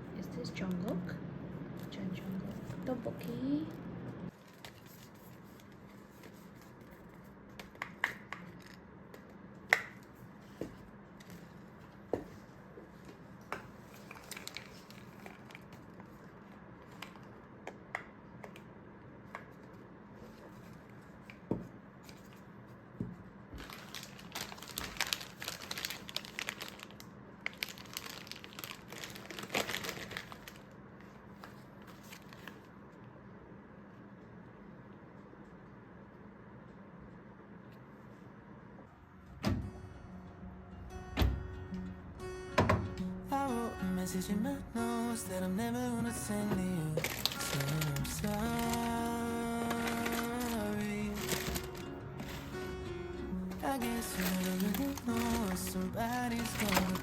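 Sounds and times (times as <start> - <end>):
packaging crinkling and rustling: 4.3 - 17.4, 23.5 - 32.8, 46.6 - 52.7, 53.3 - 57.0.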